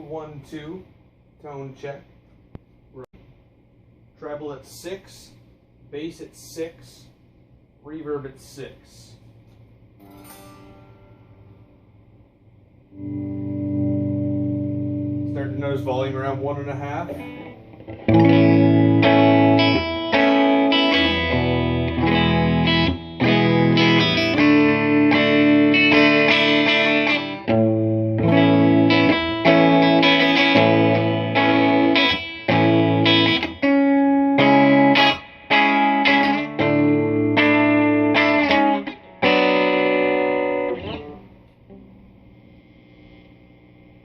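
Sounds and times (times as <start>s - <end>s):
electric guitar strummed chords: 10.0s - 11.8s, 12.9s - 42.0s.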